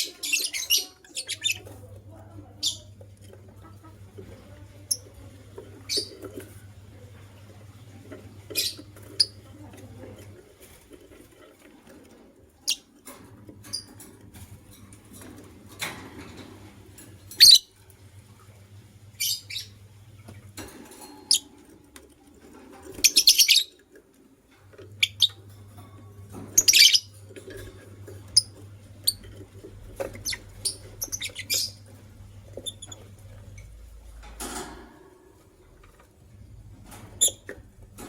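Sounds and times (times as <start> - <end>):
birds chirping: 0.0 - 10.0, 16.2 - 20.4, 23.0 - 23.8, 24.8 - 33.8.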